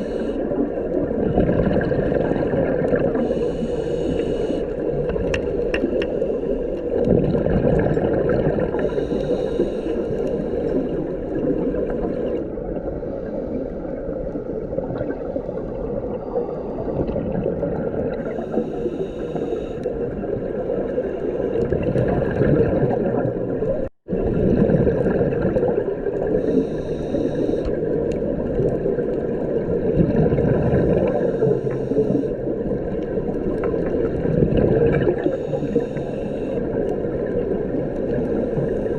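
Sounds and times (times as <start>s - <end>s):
regulator breath hiss: 0.0s - 0.4s, 3.2s - 4.7s, 8.8s - 10.9s, 18.3s - 19.9s, 26.4s - 27.8s, 31.2s - 32.4s, 35.3s - 36.7s
underwater bubbles gurgling: 0.0s - 38.9s.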